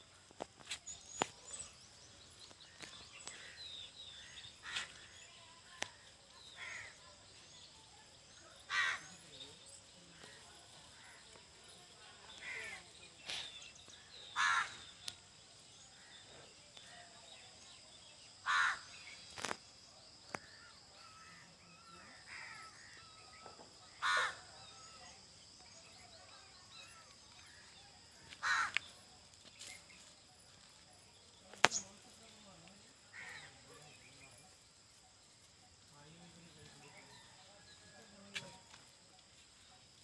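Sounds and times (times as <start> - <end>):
birds chirping: 0.0 - 40.0
crow cawing: 8.7 - 9.1, 14.4 - 14.9, 18.4 - 18.9, 23.9 - 24.5, 28.4 - 28.8.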